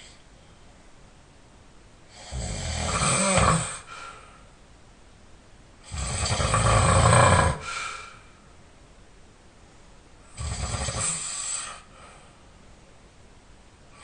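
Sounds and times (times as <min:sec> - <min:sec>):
man snoring: 0:02.1 - 0:03.9, 0:05.9 - 0:07.7, 0:10.4 - 0:11.7.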